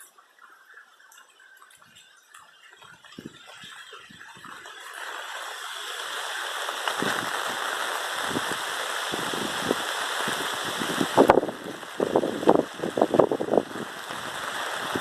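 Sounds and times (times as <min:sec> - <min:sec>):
heavy rain hissing: 0:03.2 - 0:15.0.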